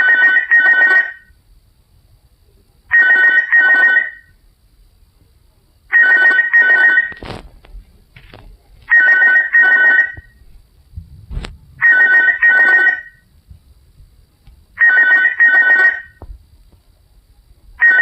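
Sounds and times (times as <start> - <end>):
phone ringtone double ring: 0.0 - 1.3, 2.9 - 4.3, 5.9 - 7.2, 8.9 - 10.4, 11.8 - 13.2, 14.8 - 16.2, 17.8 - 18.0.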